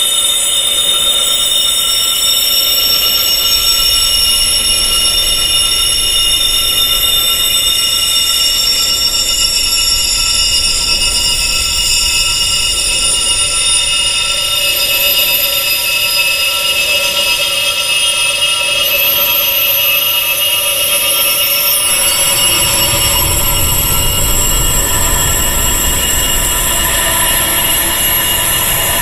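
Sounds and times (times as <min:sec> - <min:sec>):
wind chimes ringing: 0:18.8 - 0:29.0.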